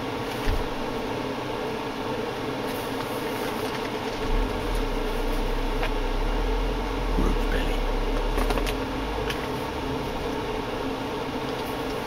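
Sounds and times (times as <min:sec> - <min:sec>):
steady mechanical hum: 0:00.0 - 0:12.0
deep low rumble: 0:04.2 - 0:11.2.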